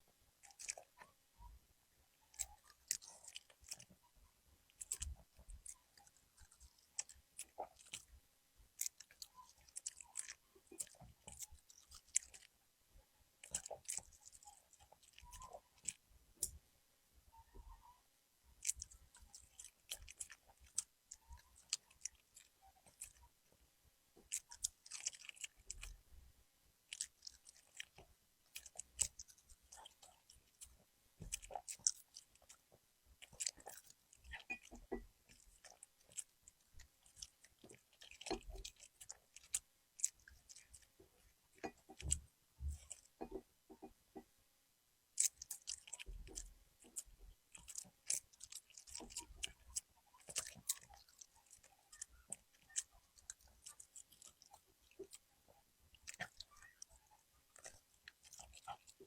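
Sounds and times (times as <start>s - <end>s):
dog chewing and crunching food: 0.4s - 1.6s, 2.2s - 4.1s, 4.7s - 12.6s, 13.4s - 16.6s, 18.5s - 23.6s, 24.2s - 26.0s, 26.8s - 44.2s, 45.2s - 59.0s.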